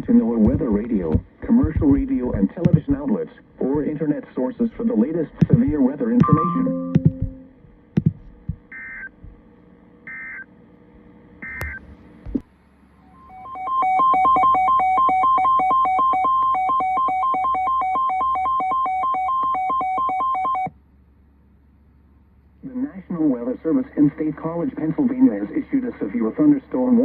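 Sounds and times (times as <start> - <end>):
two-pitch electronic alert tone: 5.5 - 7.5
digital data chirps: 6.2 - 7.5.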